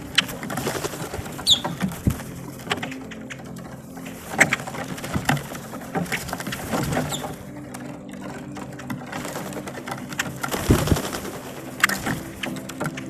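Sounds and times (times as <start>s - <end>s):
grackles calling: 1.3s - 6.0s.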